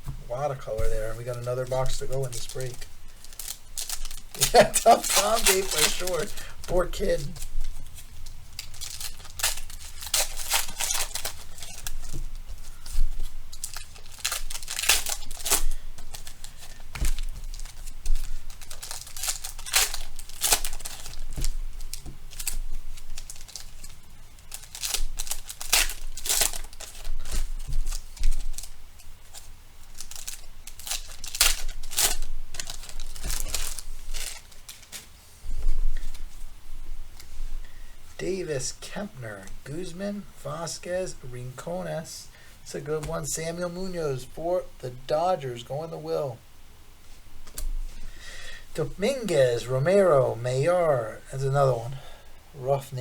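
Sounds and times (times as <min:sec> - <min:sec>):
foil wrappers crinkling and tearing: 0:00.5 - 0:36.5.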